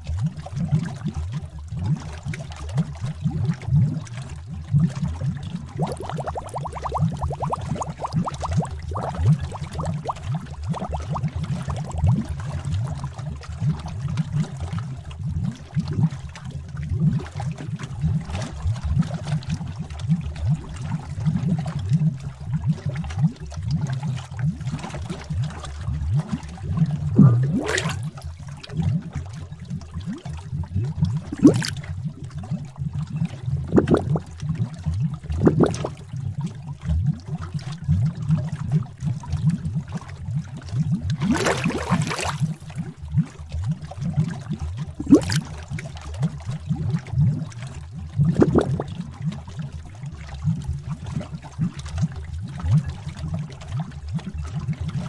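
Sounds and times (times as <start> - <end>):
thick liquid bubbling: 0.0 - 55.0
sharp bubble pops: 5.8 - 12.2, 27.0 - 28.3, 31.3 - 31.8, 33.7 - 34.2, 35.4 - 35.9, 41.2 - 42.7, 45.0 - 45.5, 48.3 - 48.8.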